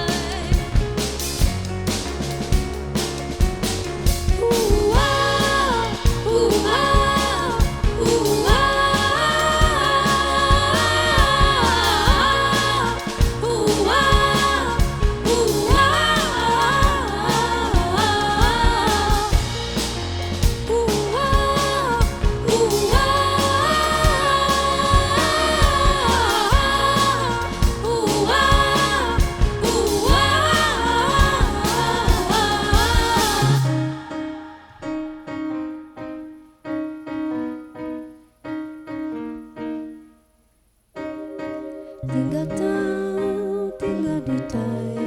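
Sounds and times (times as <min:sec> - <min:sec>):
bass line: 0:00.0 - 0:34.1, 0:41.4 - 0:45.0
drum kit beat: 0:00.0 - 0:34.1
keyboard and synthesizer: 0:00.0 - 0:35.5, 0:41.0 - 0:45.0
wordless sung melody: 0:04.1 - 0:36.5, 0:41.0 - 0:45.0.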